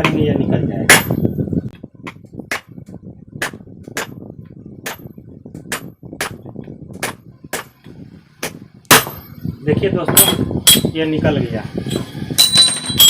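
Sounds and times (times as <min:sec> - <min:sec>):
hammer striking metal shaft: 0:10.1 - 0:11.0.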